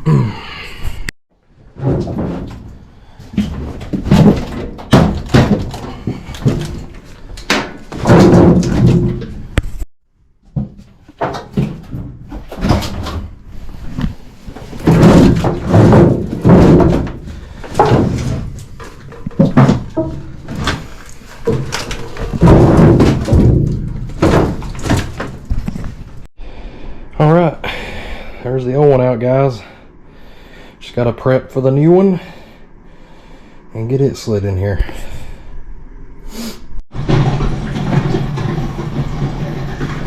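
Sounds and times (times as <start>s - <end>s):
sheet-metal cabinet thumps and bangs: 1.7s - 9.6s, 10.4s - 13.4s, 14.5s - 26.3s, 36.9s - 40.0s.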